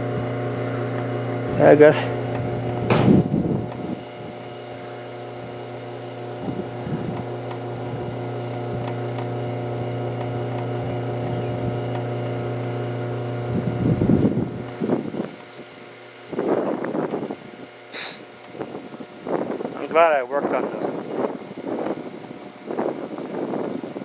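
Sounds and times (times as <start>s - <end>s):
engine humming: 0.0s - 15.4s
brief knock: 2.9s - 3.3s.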